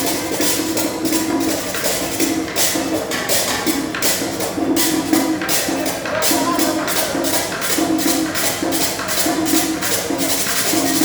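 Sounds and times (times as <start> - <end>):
music with percussion beat: 0.0 - 11.0.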